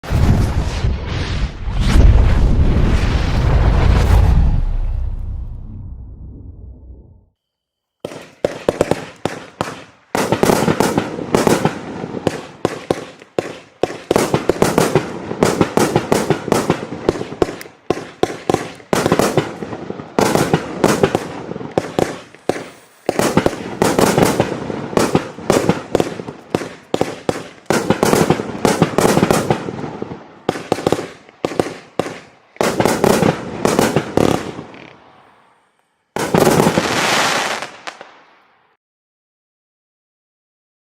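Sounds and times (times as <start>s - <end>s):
firework cake firing: 0.0s - 5.4s, 8.1s - 35.6s
aerial firework bangs: 0.0s - 6.6s.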